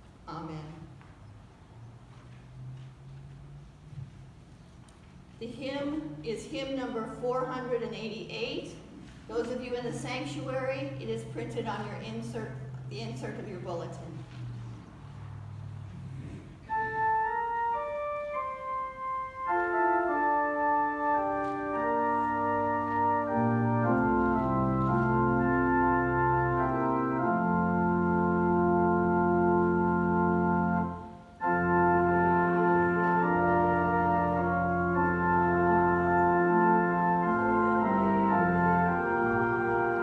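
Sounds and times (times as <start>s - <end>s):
church organ playing hymn chords: 16.6s - 40.0s.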